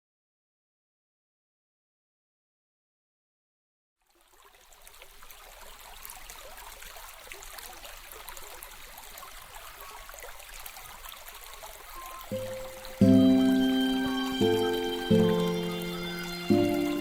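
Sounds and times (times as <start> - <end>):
stream water flowing and splashing: 4.0 - 17.0.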